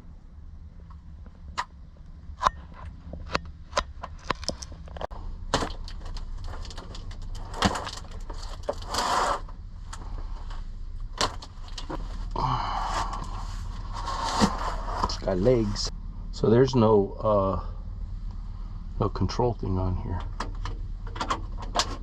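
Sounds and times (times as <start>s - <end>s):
short scraping rustles: 7.4s - 10.7s, 11.6s - 15.9s.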